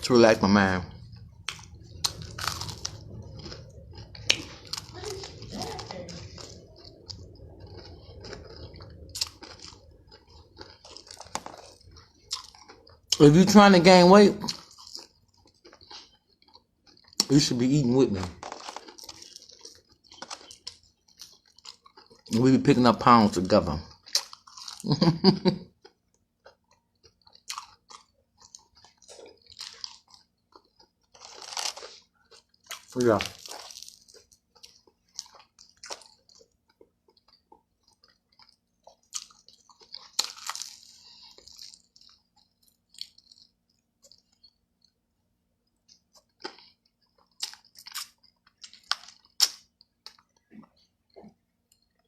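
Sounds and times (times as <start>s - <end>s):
person talking: 0.0s - 1.0s, 4.4s - 6.4s, 13.2s - 14.6s, 17.2s - 18.4s, 22.3s - 23.9s, 32.9s - 33.4s
person chewing food: 0.0s - 52.0s.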